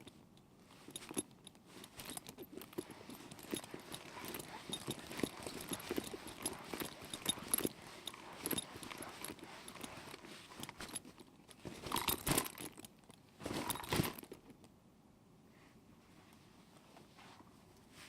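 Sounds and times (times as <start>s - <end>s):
backpack contents rattling: 0.8s - 14.6s.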